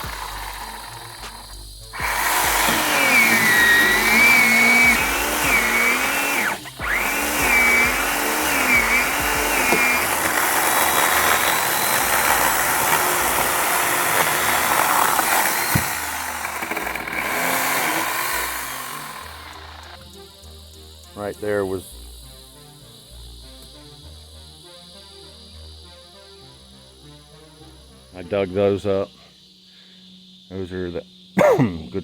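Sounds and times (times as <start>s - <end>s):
chainsaw cutting: 0.0s - 20.0s.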